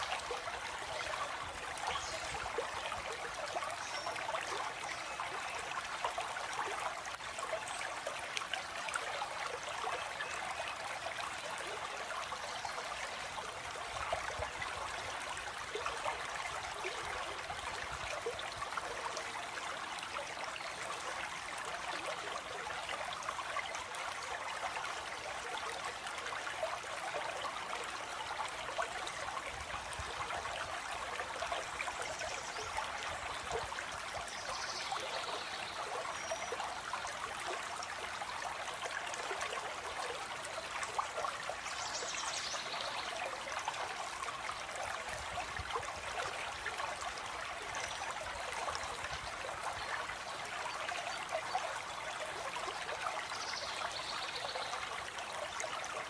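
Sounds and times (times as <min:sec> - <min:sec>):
stream water trickling: 0:00.0 - 0:56.0.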